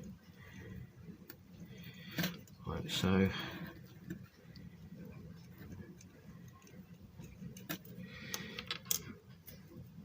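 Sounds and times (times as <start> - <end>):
plastic model parts clicking: 7.6 - 9.1.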